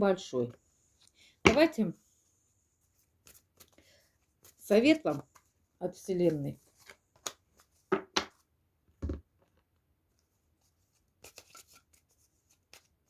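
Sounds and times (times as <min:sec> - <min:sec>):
cards being shuffled: 0:06.2 - 0:08.4, 0:11.2 - 0:13.0.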